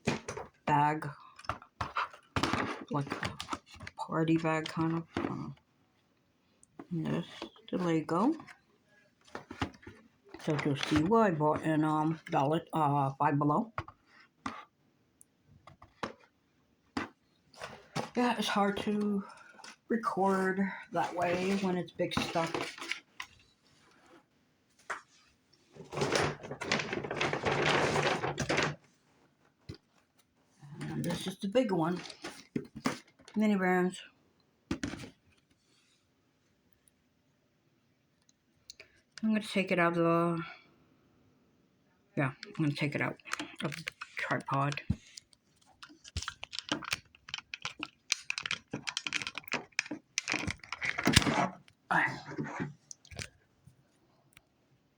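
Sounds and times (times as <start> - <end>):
rustling of toys and packaging: 0.0 - 14.8, 15.4 - 34.0, 42.2 - 54.0
scraping and rustling: 17.0 - 30.0
camera being handled: 44.9 - 51.6.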